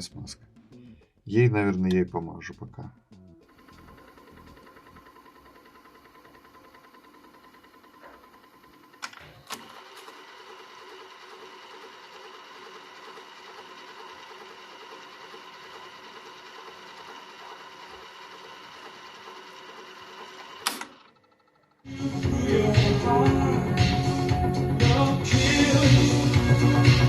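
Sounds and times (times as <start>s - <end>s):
tape motor whirring: 3.4s - 21.9s.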